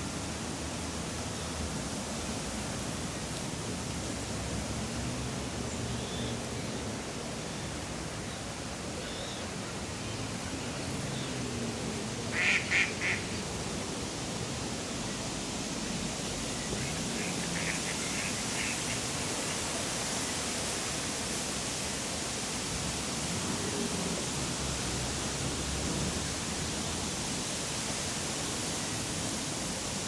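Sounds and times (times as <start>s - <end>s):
distant park ambience: 0.0s - 30.0s
duck quacking: 12.3s - 13.3s
wind hissing: 12.4s - 30.0s.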